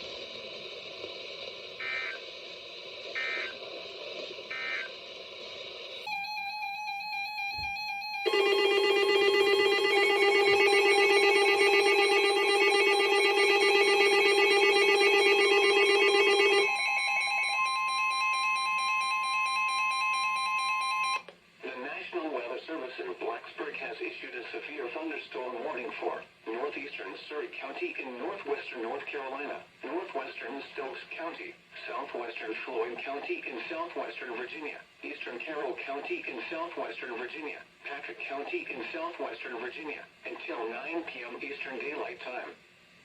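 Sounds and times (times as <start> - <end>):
data signal bursts: 1.8 - 2.2, 3.1 - 3.6, 4.5 - 4.9, 6.0 - 21.2
steady high alert tones: 6.1 - 21.2
warbling electronic alert tone: 6.1 - 21.2.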